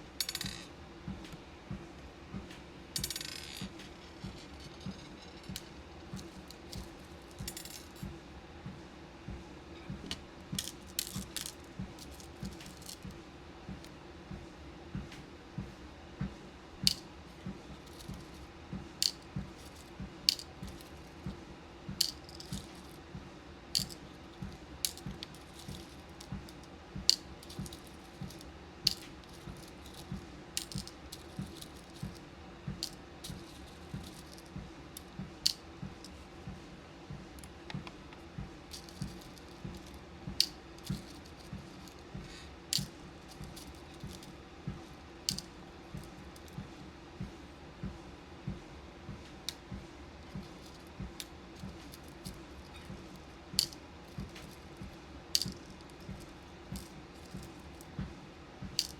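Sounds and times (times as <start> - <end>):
beads and pins clicking: 0.0 - 1.4, 2.5 - 8.1, 10.0 - 13.9, 16.8 - 17.1, 17.7 - 23.0, 23.7 - 36.2, 38.7 - 44.3, 45.2 - 46.6, 50.2 - 58.9
walking pad hum: 0.0 - 58.9
soft footfalls on treadmill belt: 33.9 - 42.4, 46.0 - 53.2.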